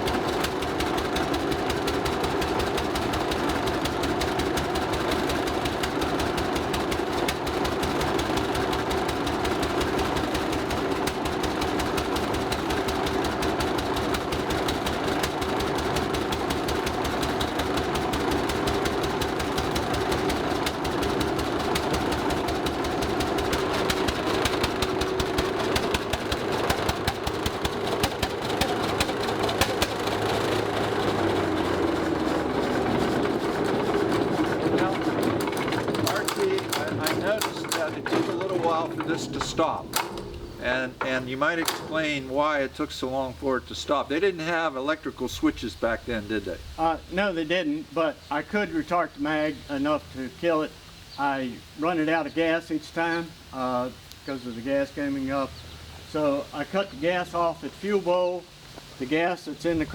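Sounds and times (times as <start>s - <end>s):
tractor engine firing: 0.0s - 47.6s.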